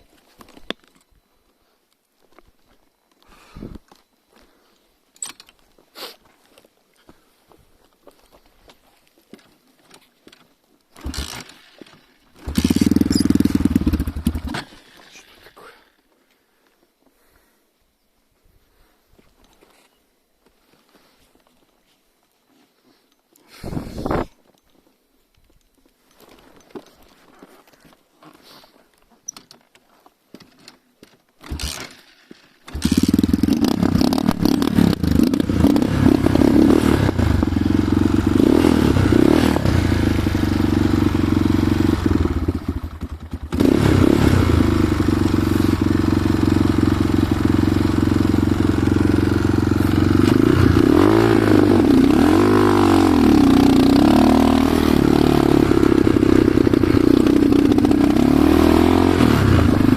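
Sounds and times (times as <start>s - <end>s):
motorcycle engine revving: 11.0s - 11.8s, 12.4s - 15.0s, 31.4s - 32.0s, 32.6s - 59.9s.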